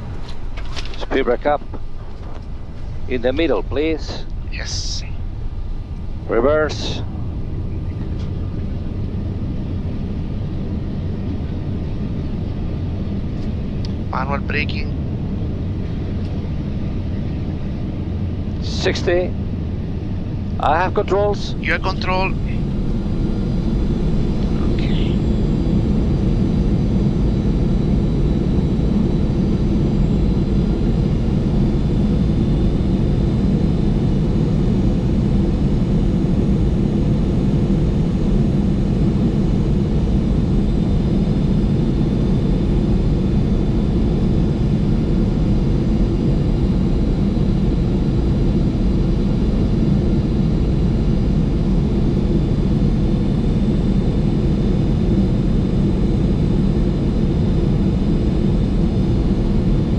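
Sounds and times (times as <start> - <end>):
aircraft engine and airflow rumble: 0.0 - 59.9
faint high whine: 0.0 - 59.9.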